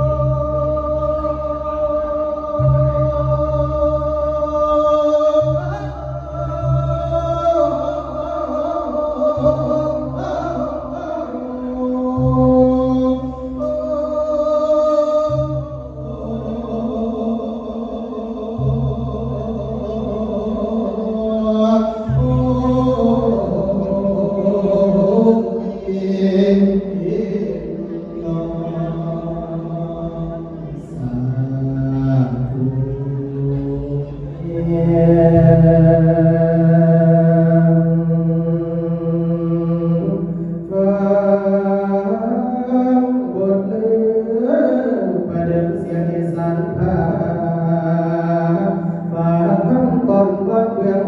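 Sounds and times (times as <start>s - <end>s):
pulsing low beat: 0.0s - 14.4s, 15.0s - 25.8s
person singing: 0.0s - 51.0s.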